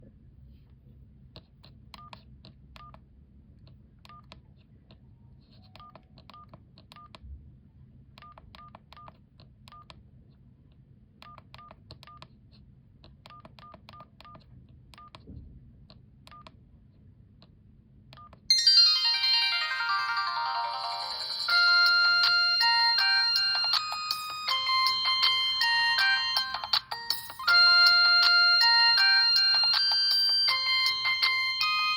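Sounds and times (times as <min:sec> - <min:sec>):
phone keypad beeps: 0:05.7 - 0:07.2, 0:16.3 - 0:16.5
polyphonic ringtone: 0:18.5 - 0:31.9.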